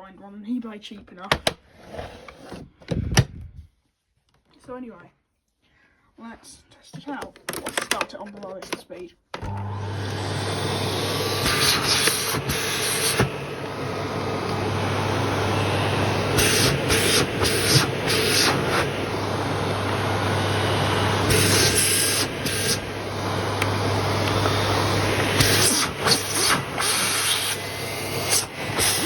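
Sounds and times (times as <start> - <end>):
vacuum cleaner running: 9.4 - 29.0.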